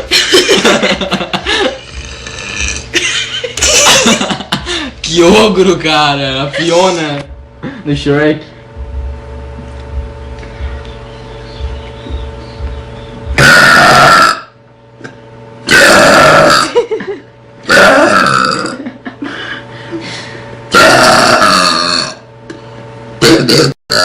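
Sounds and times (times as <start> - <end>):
girl burping: 13.4 - 14.5, 15.7 - 16.8, 17.7 - 18.8, 20.7 - 22.2, 23.2 - 24.0.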